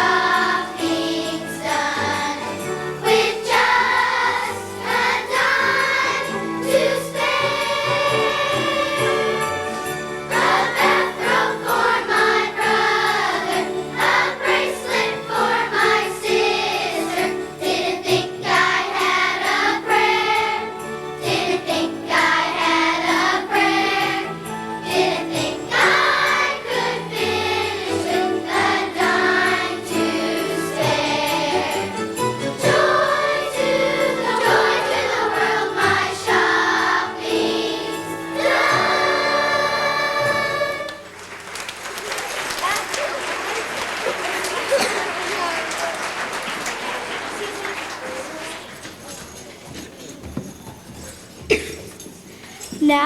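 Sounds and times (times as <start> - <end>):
musical accompaniment: 0.0 - 42.2
children's choir singing: 0.0 - 42.5, 43.1 - 49.8.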